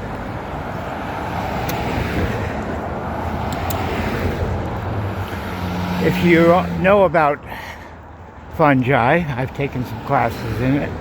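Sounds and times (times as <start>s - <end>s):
passing car traffic: 0.0s - 11.0s.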